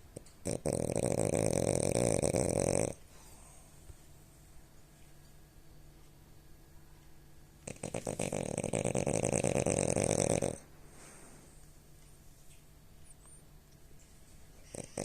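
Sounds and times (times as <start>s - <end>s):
dog snoring: 0.4s - 3.0s, 7.6s - 10.7s, 14.6s - 15.0s.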